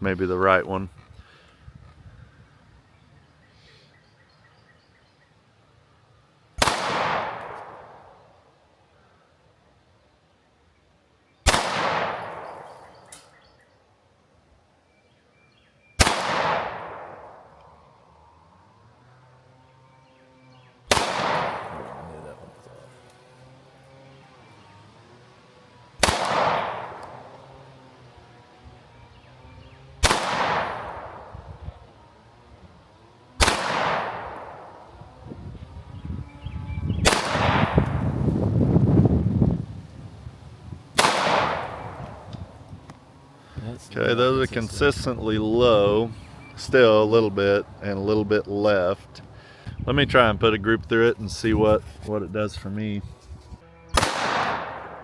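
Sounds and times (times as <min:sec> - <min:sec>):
pistol shots with echo: 0:06.6 - 0:08.4, 0:11.4 - 0:13.4, 0:16.0 - 0:17.7, 0:20.9 - 0:22.7, 0:25.9 - 0:28.2, 0:29.1 - 0:31.5, 0:33.4 - 0:35.0, 0:37.0 - 0:38.0, 0:41.0 - 0:42.3, 0:53.9 - 0:55.0
low rumbling noise: 0:16.0 - 0:55.0.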